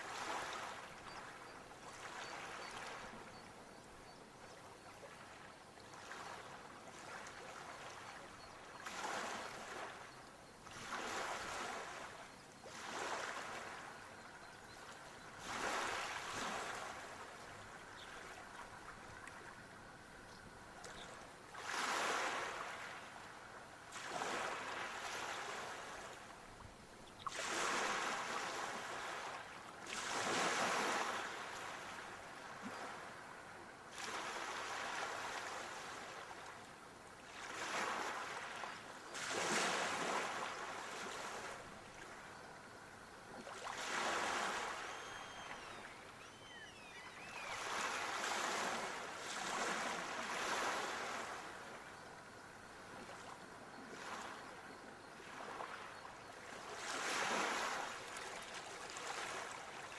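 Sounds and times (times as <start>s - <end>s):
sea waves breaking on shore: 0.0s - 3.6s, 4.5s - 52.0s, 52.8s - 59.9s
faint high chirps: 44.6s - 48.2s.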